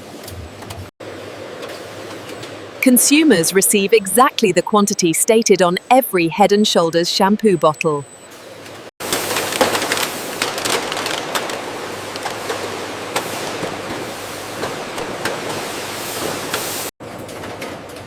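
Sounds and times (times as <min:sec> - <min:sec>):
machine clicks and clatter: 0:09.0 - 0:15.7
bottling machinery hissing: 0:09.0 - 0:16.9.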